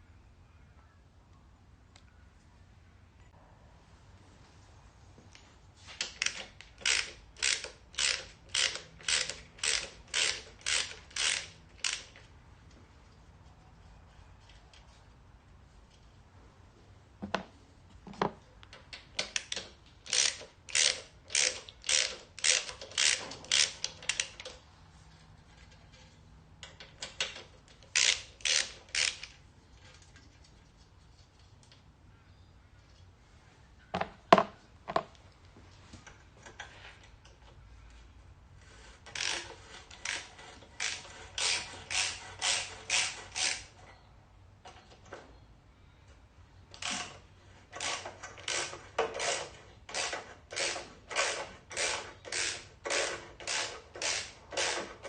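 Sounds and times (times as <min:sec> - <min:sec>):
ratchet wrench clicking: 0:06.0 - 0:12.3, 0:19.2 - 0:24.6, 0:26.8 - 0:29.4, 0:39.1 - 0:43.8, 0:47.8 - 0:55.0.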